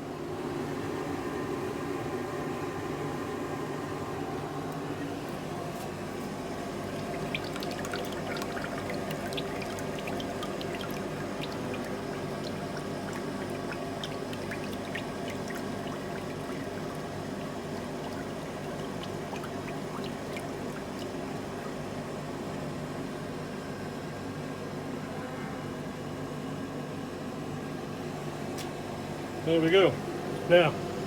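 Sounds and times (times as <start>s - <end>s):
background hum: 0.0s - 23.4s.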